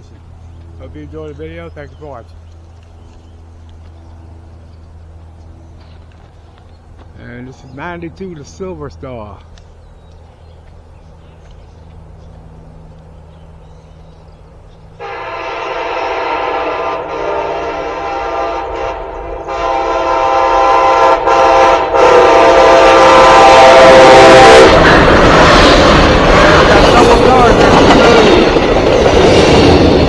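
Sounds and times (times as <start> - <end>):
train rumble: 0.0 - 30.0
train air horn chord: 15.0 - 25.6.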